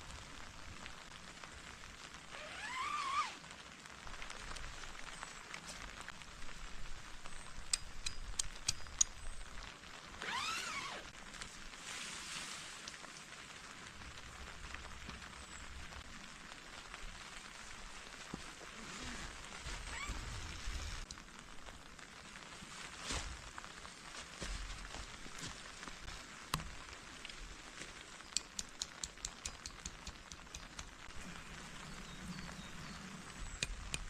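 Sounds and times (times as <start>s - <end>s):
steady rain hiss and patter: 0.0s - 34.0s
sharp ticks: 7.7s - 9.2s, 28.3s - 31.0s, 33.6s - 34.0s.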